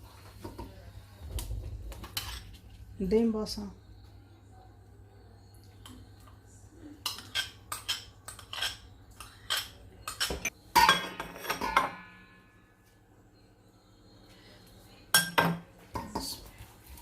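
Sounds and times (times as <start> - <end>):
spoon clinking against bowl: 7.0 - 12.3.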